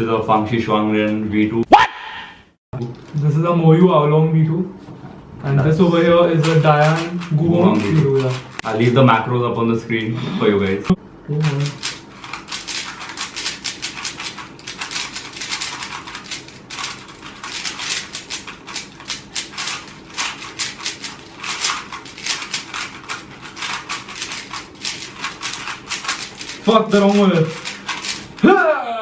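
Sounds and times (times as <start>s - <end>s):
puzzle cubes clicking: 6.4s - 8.6s, 11.4s - 28.4s.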